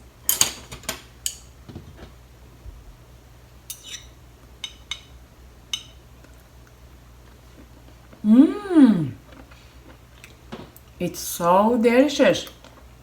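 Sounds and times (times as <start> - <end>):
utensils clinking against dish: 3.7 - 5.1.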